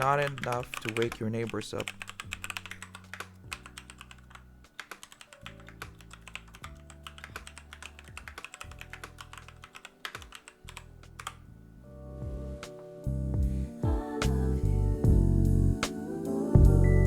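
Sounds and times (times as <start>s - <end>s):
mechanical keyboard typing: 0.0s - 11.4s
background music: 0.0s - 17.0s.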